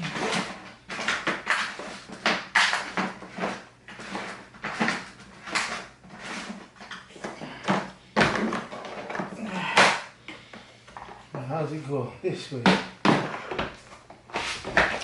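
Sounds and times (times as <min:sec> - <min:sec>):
plastic parts clacking and scraping: 0:00.0 - 0:10.0.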